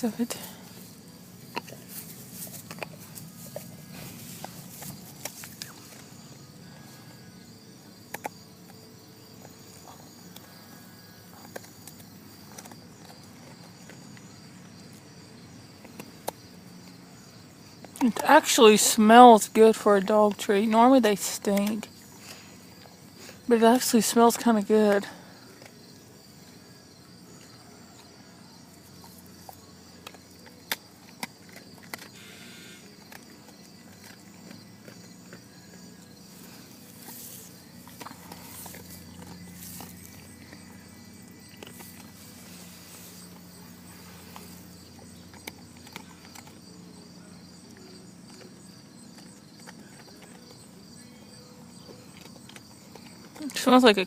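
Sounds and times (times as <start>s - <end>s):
dog chewing treat crunches: 0.4s - 54.0s.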